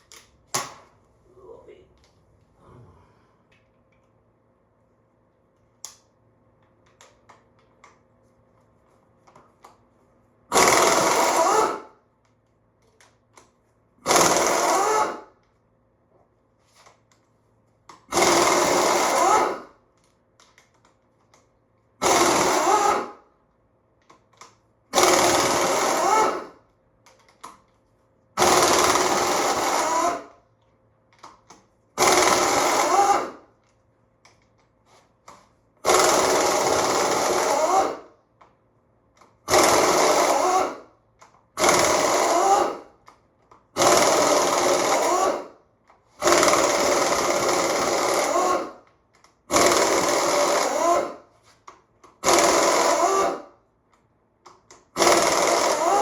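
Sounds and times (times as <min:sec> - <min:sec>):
impact wrench hammering: 0:10.5 - 0:11.9, 0:17.9 - 0:19.6, 0:22.0 - 0:23.2, 0:32.0 - 0:33.4, 0:49.5 - 0:51.2, 0:52.1 - 0:53.4, 0:54.9 - 0:56.0.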